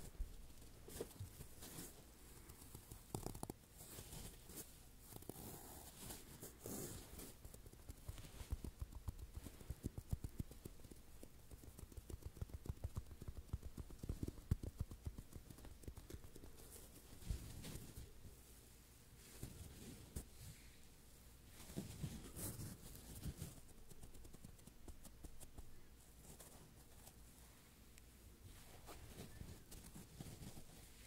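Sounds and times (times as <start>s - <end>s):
scratchy rubbing: 0.9s - 18.0s
fingers tapping foam blocks: 7.2s - 16.6s.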